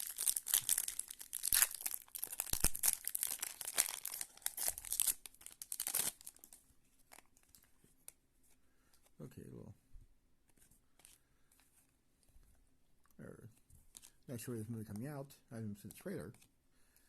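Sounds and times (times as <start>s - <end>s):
plastic wrapper crinkling and tearing: 0.0s - 7.7s, 13.9s - 14.3s.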